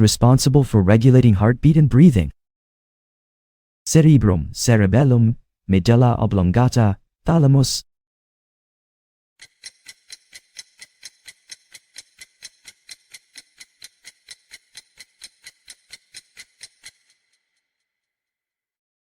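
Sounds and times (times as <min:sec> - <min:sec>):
countdown timer ticking: 0:09.4 - 0:17.2.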